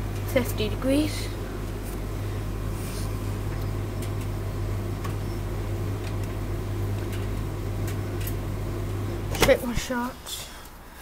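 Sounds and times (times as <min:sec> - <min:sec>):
tumble dryer motor hum: 0:00.0 - 0:10.8.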